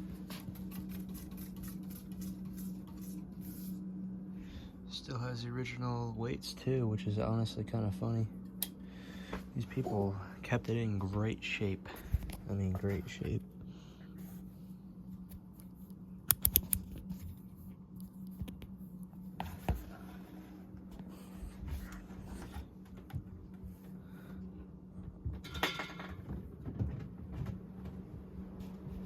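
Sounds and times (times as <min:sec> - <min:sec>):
ceiling fan motor hum: 0:00.0 - 0:29.0
sharp clicks: 0:16.3 - 0:16.9.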